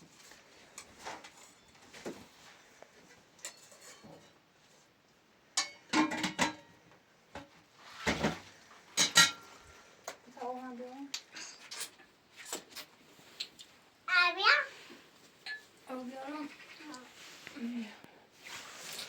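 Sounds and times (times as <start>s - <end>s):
dishes and utensils clattering: 3.4s - 4.4s, 5.6s - 6.8s, 9.0s - 9.9s, 15.4s - 15.7s.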